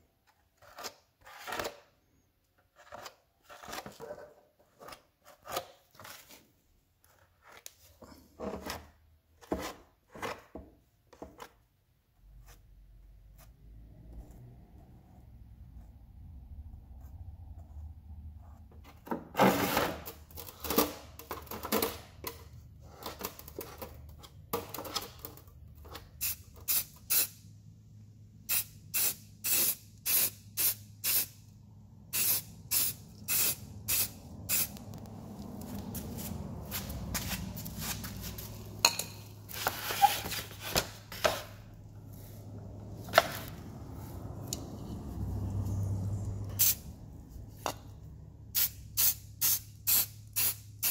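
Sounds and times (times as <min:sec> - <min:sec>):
spray paint hissing bursts: 0:26.2 - 0:27.4, 0:28.5 - 0:31.4, 0:32.1 - 0:34.8, 0:46.6 - 0:46.8, 0:48.5 - 0:50.9.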